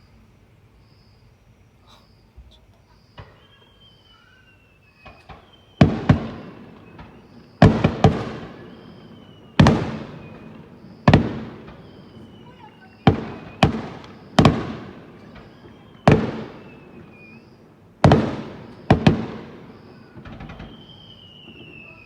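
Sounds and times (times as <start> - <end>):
fireworks booming: 2.1 - 22.0
faint high whistle sliding down: 3.2 - 7.7, 8.5 - 9.6, 19.6 - 22.0
rolling echo: 5.0 - 22.0.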